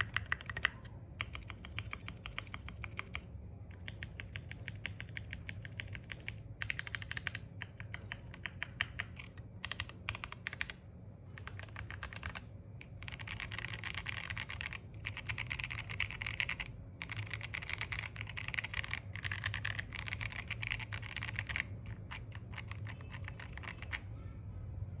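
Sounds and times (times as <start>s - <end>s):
mechanical keyboard typing: 0.0s - 24.1s.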